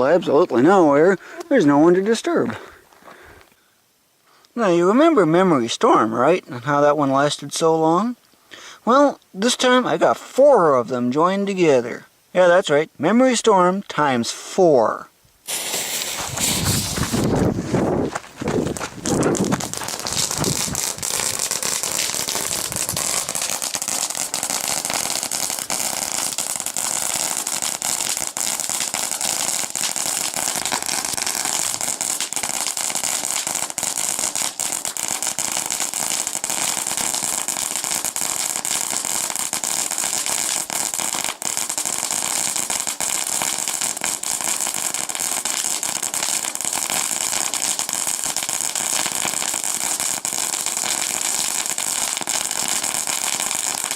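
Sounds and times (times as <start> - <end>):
fireworks hissing and crackling: 0.6 - 3.5, 15.4 - 53.9.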